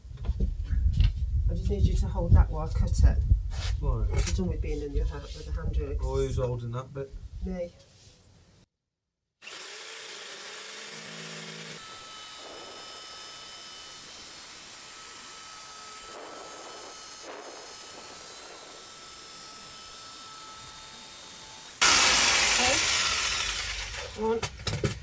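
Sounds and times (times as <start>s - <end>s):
jigsaw cutting plywood: 9.4s - 24.4s.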